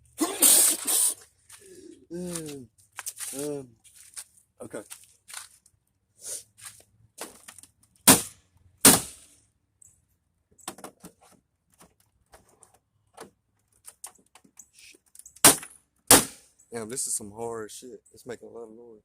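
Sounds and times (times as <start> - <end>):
hammer striking tv casing: 8.1 - 8.3, 8.9 - 9.2.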